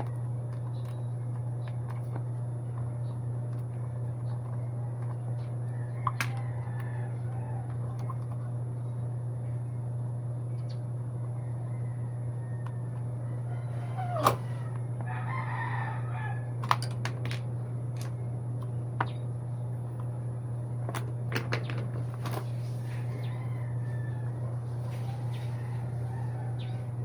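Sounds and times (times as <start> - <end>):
steady low hum: 0.0 - 27.0
rooster crowing: 5.6 - 8.2, 11.2 - 16.7, 22.5 - 27.0.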